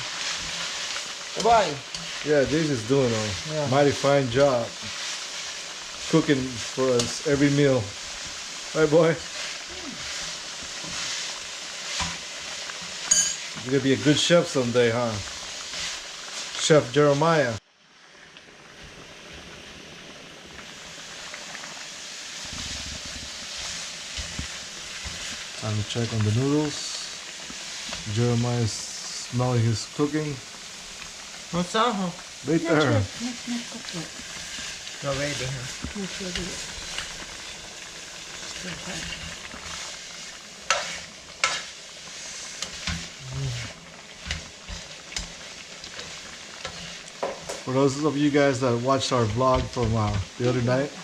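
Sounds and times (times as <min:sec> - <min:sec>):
food sizzling in a pan: 0:00.0 - 0:51.0
stirring knocks: 0:42.6 - 0:47.7, 0:49.1 - 0:50.8.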